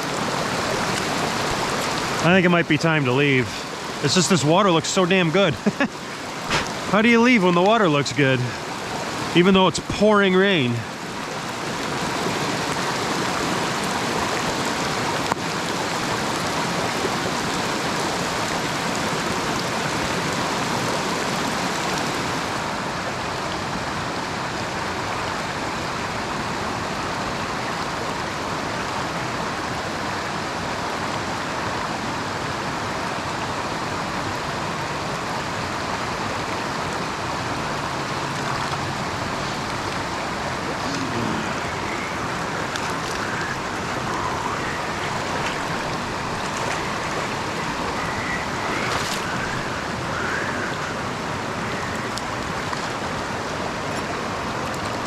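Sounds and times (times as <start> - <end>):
heavy rain pouring: 0.0 - 55.0
brook rushing: 6.4 - 8.3.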